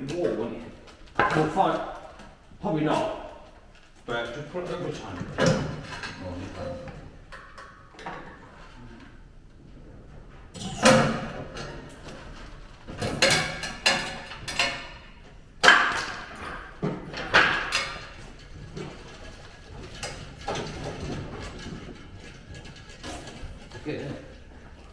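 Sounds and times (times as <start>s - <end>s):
metal knocks and clanks: 4.7s - 8.6s, 10.3s - 24.9s.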